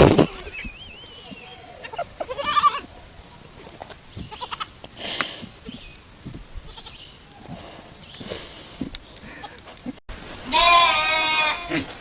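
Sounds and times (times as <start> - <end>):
goat bleating: 0.1 - 2.9, 4.3 - 4.8, 10.5 - 11.9.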